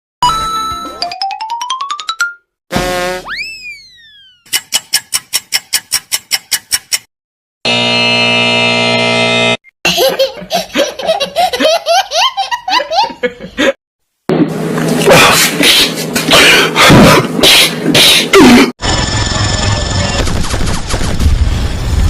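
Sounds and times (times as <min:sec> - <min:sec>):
steady buzzer tone: 0:02.7 - 0:03.3, 0:07.6 - 0:09.7, 0:18.8 - 0:20.2
child giggling and laughing: 0:09.9 - 0:13.8.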